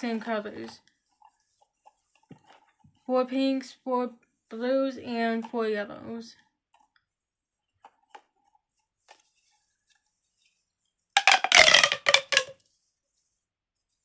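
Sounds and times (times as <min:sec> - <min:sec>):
plastic tube toy stretching rasp: 0:11.2 - 0:12.6.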